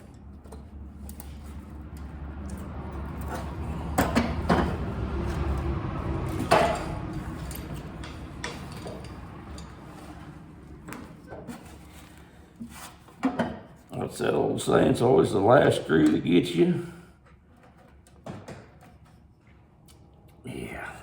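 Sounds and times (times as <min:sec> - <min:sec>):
small metallic clicks and knocks: 0:06.2 - 0:09.8.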